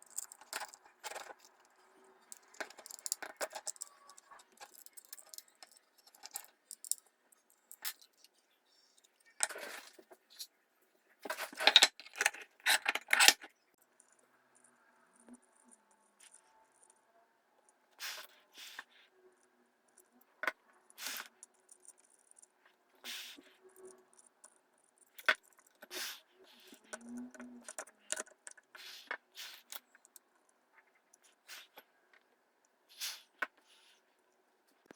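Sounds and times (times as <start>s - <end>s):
small hard objects clicking: 0.0s - 8.4s
small hard parts clicking and rattling: 0.0s - 10.5s, 11.2s - 17.0s, 18.0s - 32.3s.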